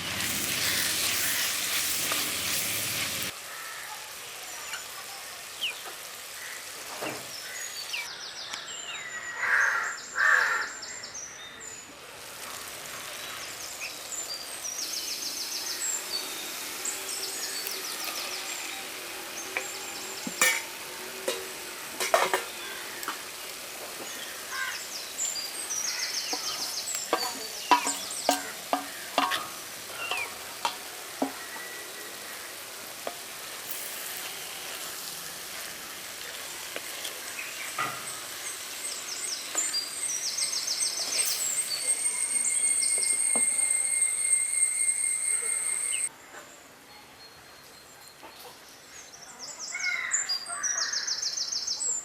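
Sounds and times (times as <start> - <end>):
food sizzling in a pan: 0.0 - 8.1, 11.6 - 46.1
birds chirping and calling: 23.9 - 30.4.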